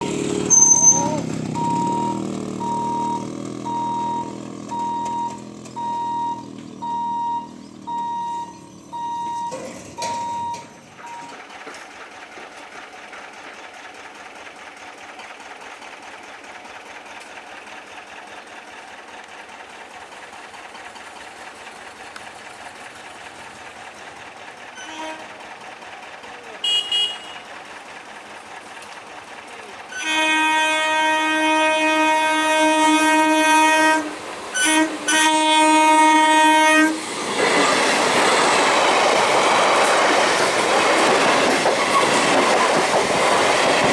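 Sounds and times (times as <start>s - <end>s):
warning hooter beeping: 0.5s - 11.4s, 26.6s - 27.5s.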